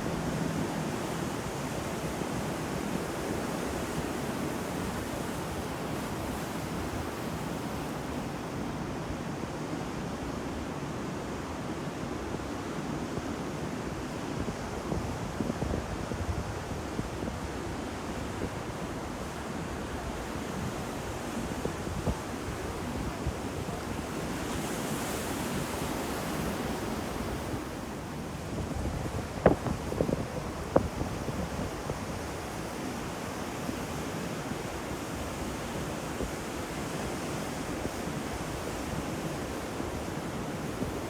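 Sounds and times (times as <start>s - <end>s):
wind buffeting microphone: 25.6s - 32.7s.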